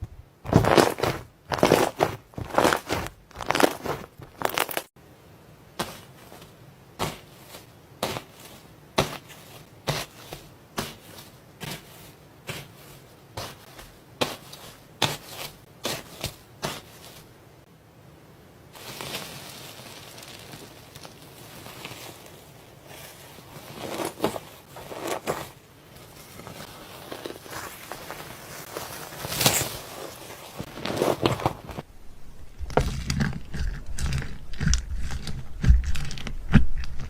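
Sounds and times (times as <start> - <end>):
slime crinkly hiss: 18.7 - 31.9.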